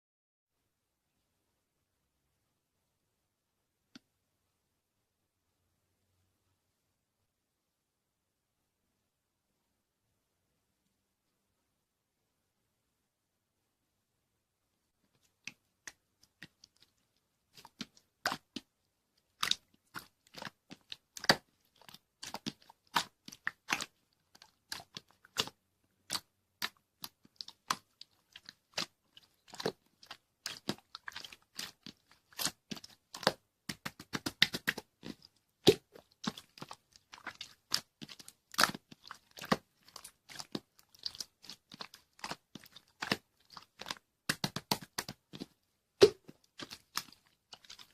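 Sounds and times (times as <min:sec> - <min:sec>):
crunching and chewing food: 0:15.2 - 0:47.9.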